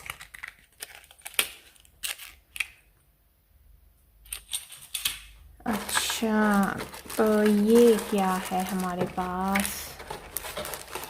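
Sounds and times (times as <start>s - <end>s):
small plastic toys clicking: 0.0s - 2.8s.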